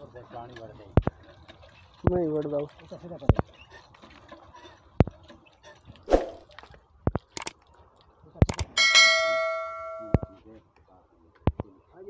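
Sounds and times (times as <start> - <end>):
metal piece ringing: 8.8 - 10.4.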